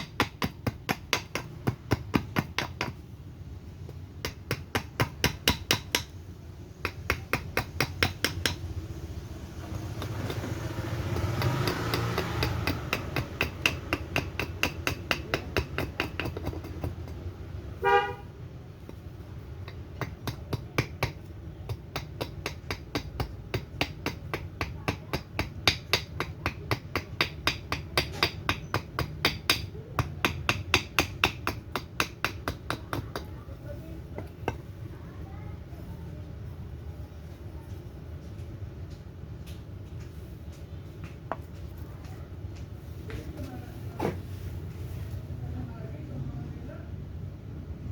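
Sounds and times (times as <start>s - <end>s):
axe chopping wood: 0.0s - 3.0s, 4.2s - 6.1s, 9.8s - 17.3s, 19.6s - 33.4s.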